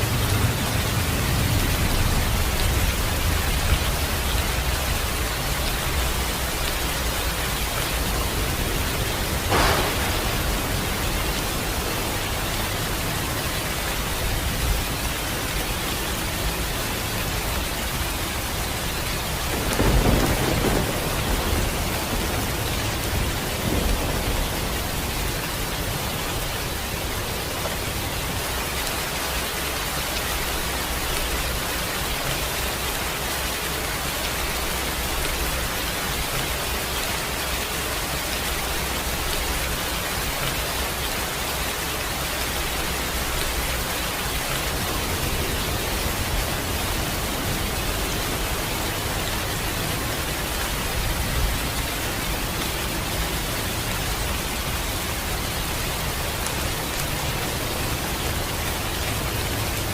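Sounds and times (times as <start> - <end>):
steady rain falling: 0.0 - 59.9
thunder: 6.2 - 14.8, 19.1 - 27.9.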